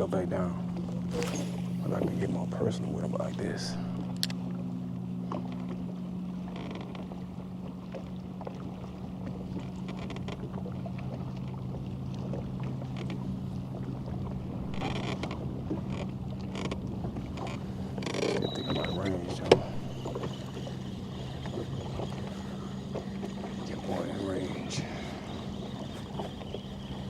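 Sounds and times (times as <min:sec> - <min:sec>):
boat motor humming: 0:00.0 - 0:27.0
water wash: 0:11.0 - 0:27.0.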